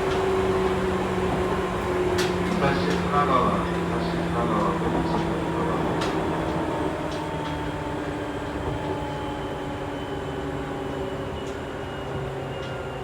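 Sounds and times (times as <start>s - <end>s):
train motor humming: 0.0s - 9.4s
train wheels rumbling on rail: 0.0s - 13.0s.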